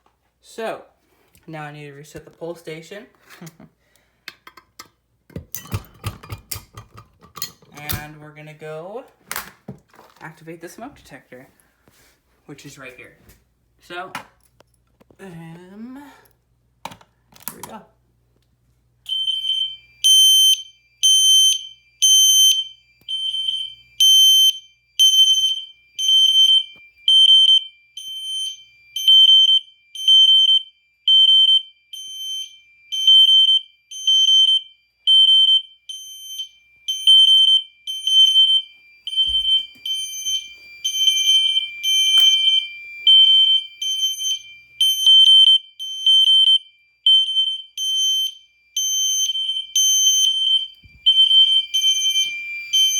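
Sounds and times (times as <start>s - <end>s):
fire alarm horns blasting: 19.0s - 52.9s.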